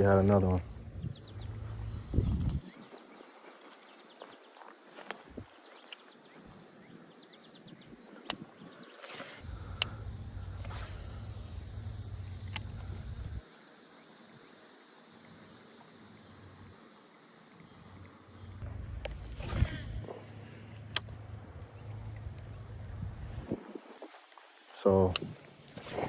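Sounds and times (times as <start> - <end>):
insects buzzing: 0.0 - 26.0
low rumble: 0.6 - 2.6, 9.4 - 13.4, 18.6 - 23.6
sharp clicks: 9.1 - 13.4, 20.7 - 21.2.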